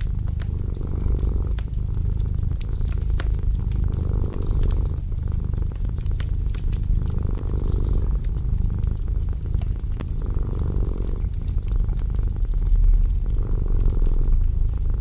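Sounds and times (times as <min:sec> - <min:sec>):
cat purring: 0:00.0 - 0:15.0
wood fire crackling: 0:00.0 - 0:15.0.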